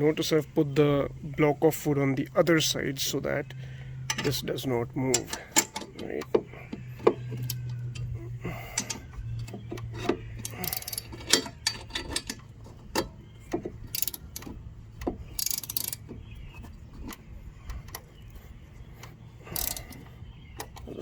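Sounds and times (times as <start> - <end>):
wrench clicking and clinking: 4.1 - 4.5, 5.1 - 16.2, 19.4 - 20.9.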